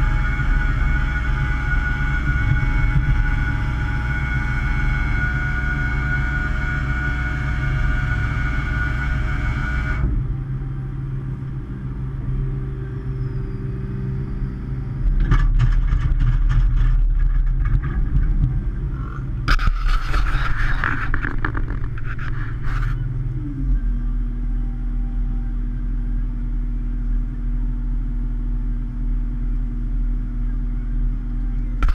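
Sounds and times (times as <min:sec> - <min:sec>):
excavator engine and hydraulics: 0:00.0 - 0:31.9
rattling knocks and scraping: 0:15.0 - 0:23.1.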